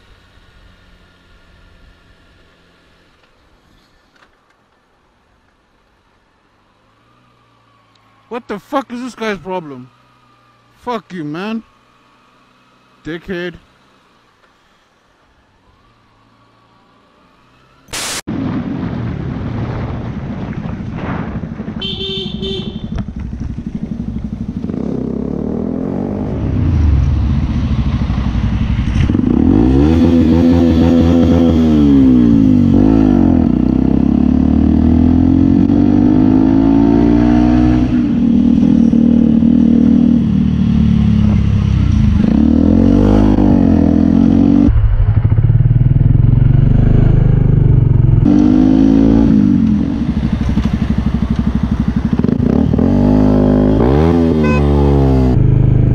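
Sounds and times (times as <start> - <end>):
motorcycle engine revving: 21.7 - 55.9
horn beeps: 54.3 - 55.2.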